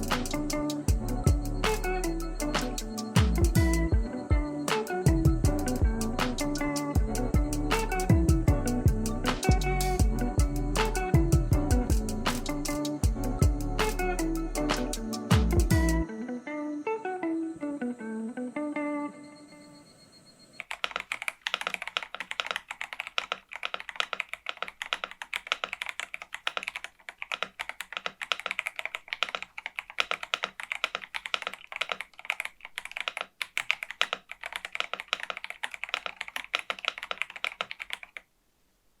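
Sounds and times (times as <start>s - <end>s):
mechanical keyboard typing: 20.6s - 38.2s.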